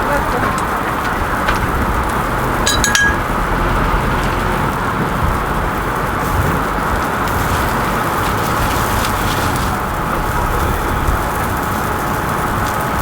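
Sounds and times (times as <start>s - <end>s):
metal utensil clink: 2.6s - 3.3s
food sizzling on a griddle: 6.2s - 12.9s.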